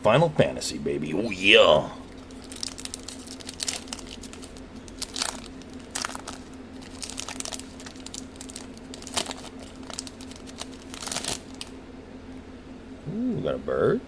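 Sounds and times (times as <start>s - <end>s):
foil wrapper crinkling and tearing: 2.1s - 11.8s.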